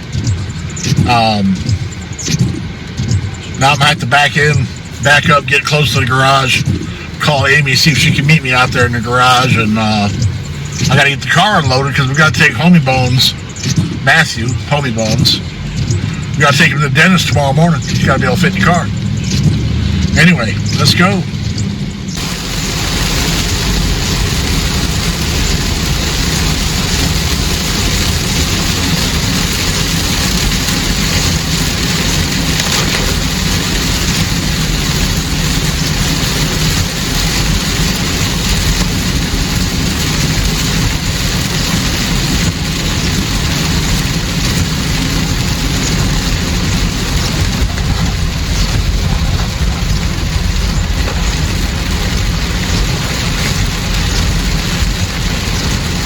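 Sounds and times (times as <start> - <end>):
engine and tyre noise: 0.0 - 56.0
rain on a car: 0.0 - 56.0.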